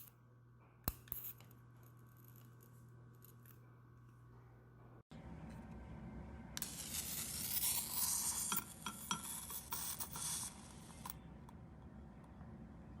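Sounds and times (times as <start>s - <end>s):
electric arc lighter crackling: 6.6s - 11.1s.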